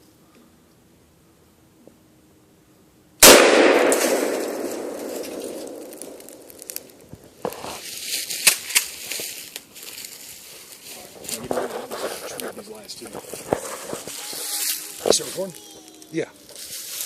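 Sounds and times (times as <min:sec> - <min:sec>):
loud bang: 0:03.2 - 0:06.8.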